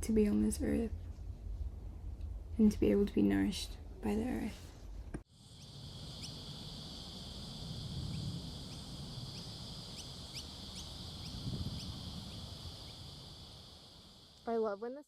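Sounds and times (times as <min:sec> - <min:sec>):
low wind rumble: 0:00.0 - 0:14.6
high insect drone: 0:05.3 - 0:15.0
rising bird chirps: 0:05.4 - 0:14.5.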